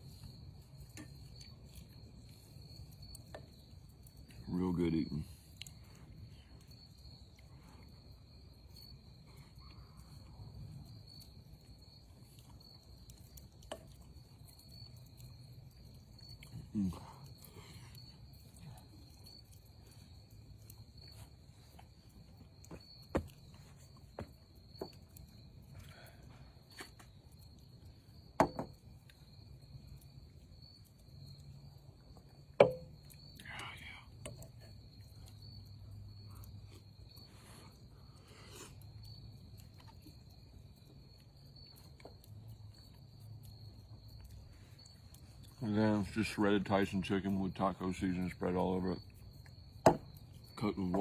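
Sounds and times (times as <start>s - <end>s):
crickets trilling: 0.0s - 51.0s
utensil striking cast iron skillet: 32.6s - 32.9s.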